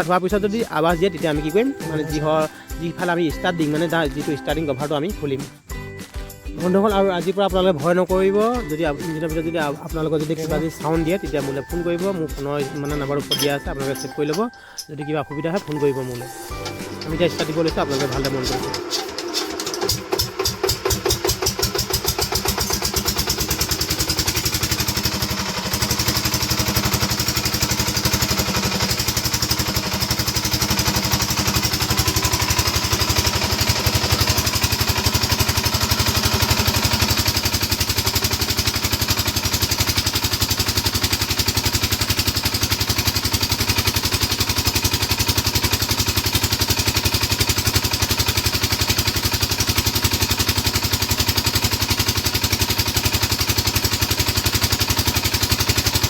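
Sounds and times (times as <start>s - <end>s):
diesel engine running: 15.6s - 56.0s.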